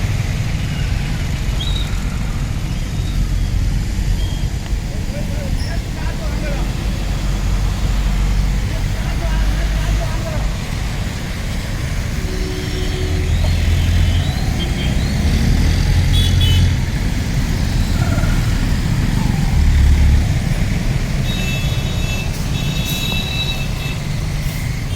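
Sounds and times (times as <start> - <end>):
heavy road traffic rumble: 0.0 - 24.9
high steady horn tone: 12.1 - 15.0, 16.1 - 16.8, 21.2 - 24.1.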